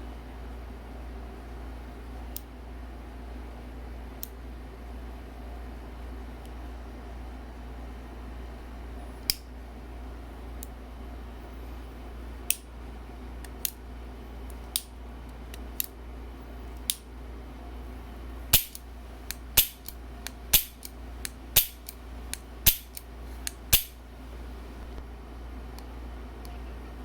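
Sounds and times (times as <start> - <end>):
revolver action clicking: 18.5 - 24.0.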